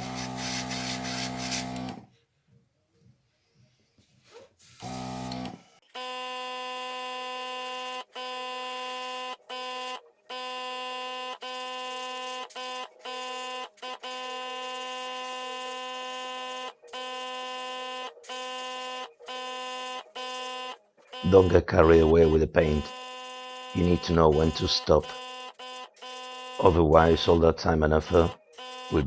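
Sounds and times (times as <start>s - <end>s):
air hissing from airbrush: 0.0s - 1.8s
airbrush compressor humming: 0.0s - 2.0s, 4.6s - 6.2s, 6.9s - 29.0s.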